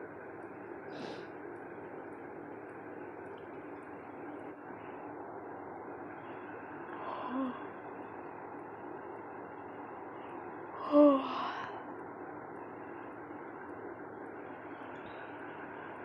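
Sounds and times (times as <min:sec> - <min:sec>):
steady hiss: 0:00.0 - 0:16.0
woman's wordless vocal sounds: 0:10.8 - 0:11.7.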